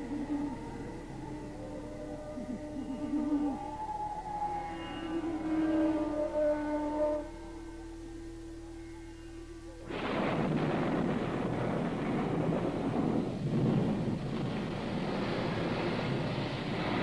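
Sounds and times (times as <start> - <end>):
thunder rumbling: 9.8 - 17.0.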